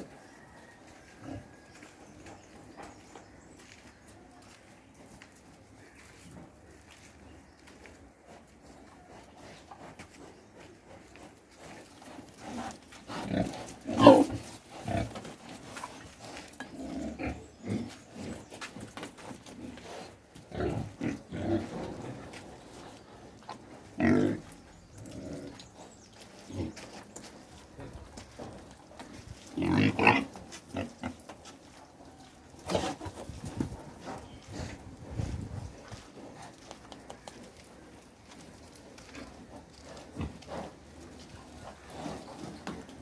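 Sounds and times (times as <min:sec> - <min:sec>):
pigs grunting and squealing: 0:13.1 - 0:15.4, 0:16.6 - 0:18.4, 0:23.8 - 0:25.7, 0:29.5 - 0:31.3.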